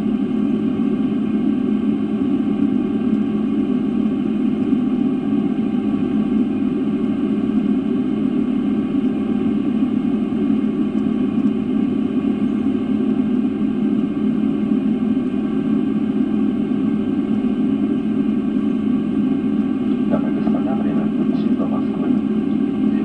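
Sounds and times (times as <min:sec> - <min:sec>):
airliner cabin rumble: 0:00.0 - 0:23.0.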